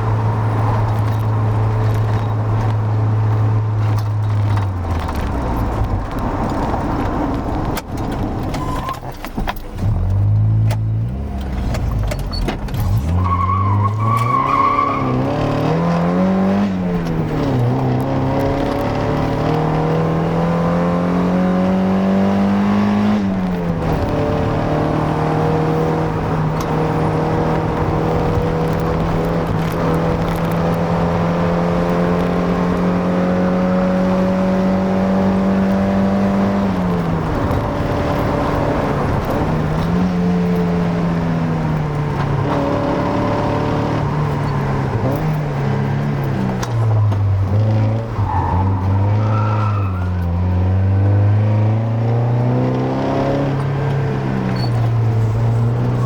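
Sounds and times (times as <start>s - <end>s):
car engine under load: 0.0s - 56.0s
short high squeal: 8.6s - 9.0s.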